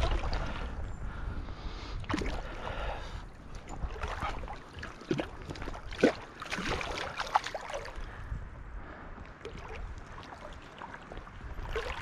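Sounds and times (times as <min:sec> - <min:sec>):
creek water splashing: 0:00.0 - 0:00.7, 0:02.0 - 0:08.2, 0:09.3 - 0:12.0
stream running: 0:02.0 - 0:08.2, 0:09.3 - 0:12.0.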